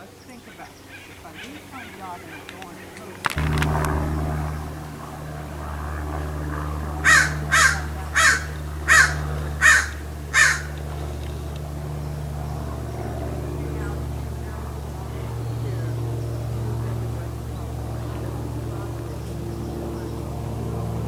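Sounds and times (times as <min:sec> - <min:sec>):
steady low drone: 0:03.2 - 0:21.0
raven cawing: 0:06.7 - 0:11.0.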